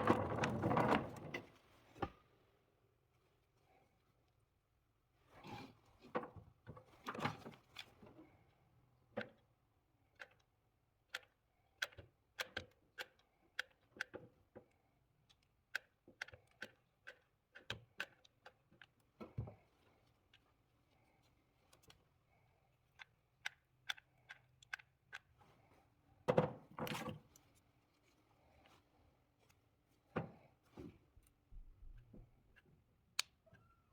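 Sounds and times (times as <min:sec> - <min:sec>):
small sharp clicks and knocks: 0:22.9 - 0:25.4.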